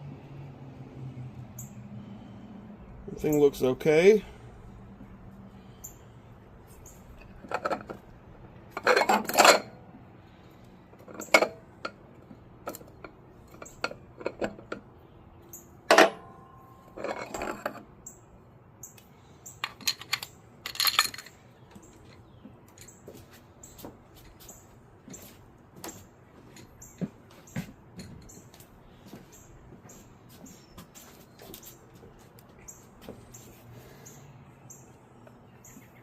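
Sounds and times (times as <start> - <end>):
metal parts clinking and clanking: 6.7 - 9.8, 11.0 - 12.0, 12.6 - 14.8, 15.9 - 18.2, 18.8 - 23.0.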